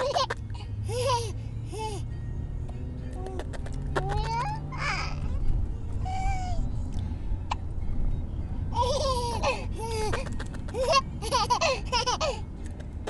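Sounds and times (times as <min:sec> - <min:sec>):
baby laughing: 0:00.0 - 0:01.3, 0:03.2 - 0:05.3, 0:08.8 - 0:12.4
car interior rumble: 0:00.0 - 0:13.0.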